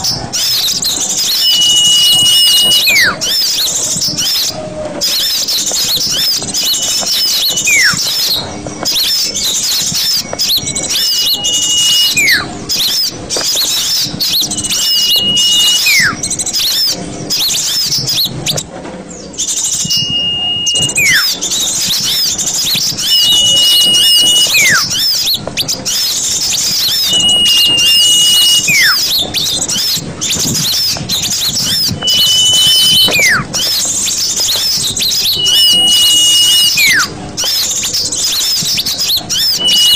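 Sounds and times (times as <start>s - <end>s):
whistled call sliding down: 0.0s - 18.6s, 19.4s - 39.9s
small birds chirping: 0.0s - 39.9s.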